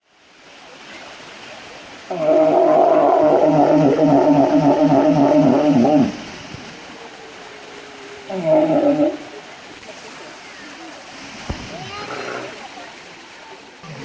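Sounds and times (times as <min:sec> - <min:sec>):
walrus call: 0:02.1 - 0:09.4.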